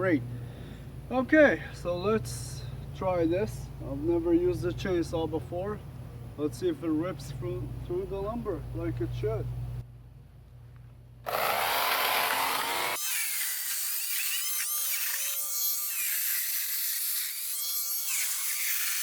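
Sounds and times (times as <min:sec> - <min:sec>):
electric chainsaw cutting wood: 0:11.2 - 0:19.0.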